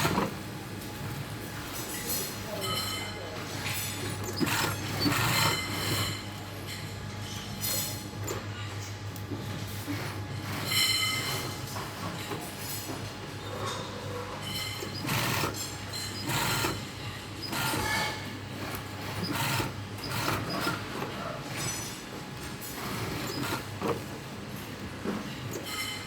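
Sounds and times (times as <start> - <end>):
sewing machine stitching: 0.0 - 0.3, 3.8 - 6.2, 9.3 - 13.0, 14.4 - 21.9, 22.6 - 24.2.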